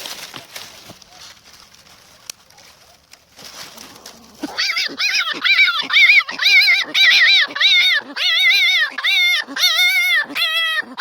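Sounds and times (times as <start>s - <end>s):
faint rustle: 0.0s - 5.0s
hedgehog squealing: 4.4s - 11.0s.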